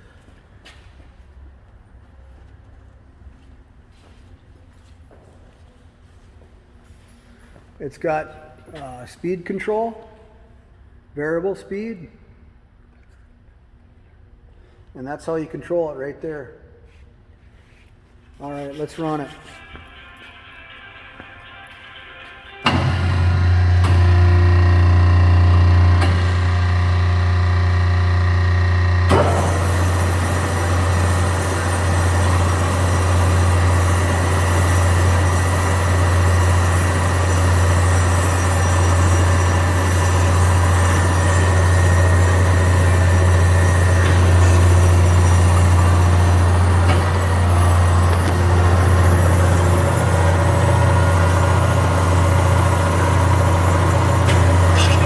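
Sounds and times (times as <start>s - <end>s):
low motor hum: 21.8s - 55.0s
bandsaw blade whirring: 29.1s - 55.0s.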